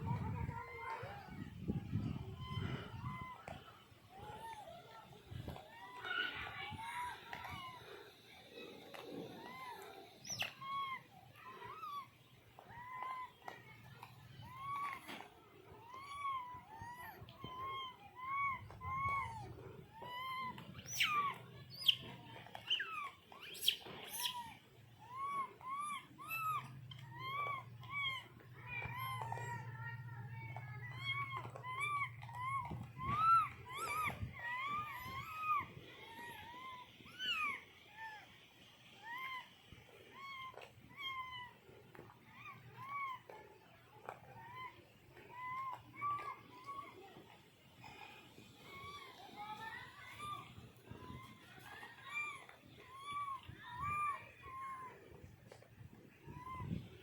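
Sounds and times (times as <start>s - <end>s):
young animal mewing: 12.8s - 30.0s, 30.6s - 37.8s.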